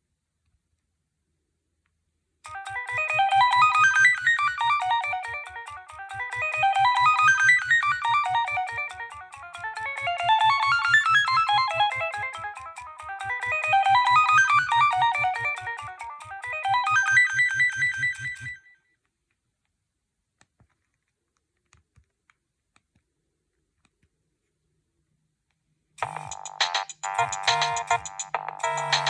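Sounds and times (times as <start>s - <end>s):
polyphonic phone ringtone: 2.5s - 18.7s, 26.0s - 29.0s.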